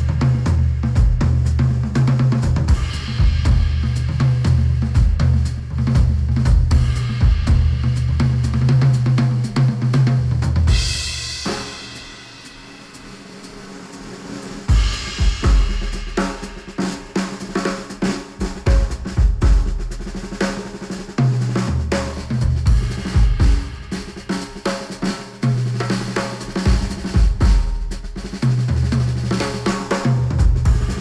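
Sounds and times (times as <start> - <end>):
heavy bass: 0.0 - 12.1, 18.5 - 20.4, 21.4 - 24.2, 30.2 - 31.0
drum kit playing steady beat: 0.0 - 31.0
cymbal wash: 10.7 - 19.1, 30.7 - 31.0.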